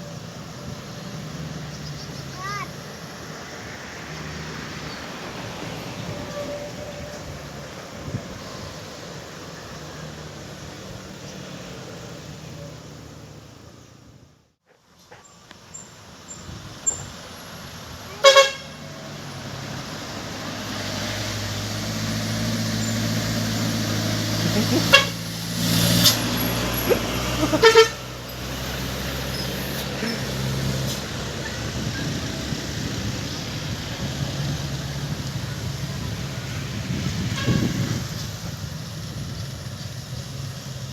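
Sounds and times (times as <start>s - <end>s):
diesel bus engine hum: 0.0s - 40.9s
bus horn honking: 6.1s - 7.4s, 18.1s - 19.0s, 24.4s - 25.3s, 26.0s - 28.3s, 37.2s - 38.1s.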